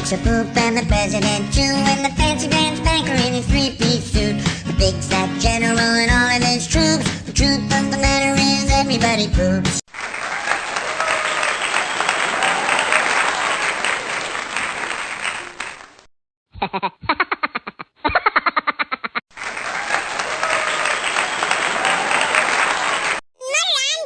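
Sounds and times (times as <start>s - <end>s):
crowd applauding and cheering: 9.9s - 16.1s, 19.3s - 23.2s.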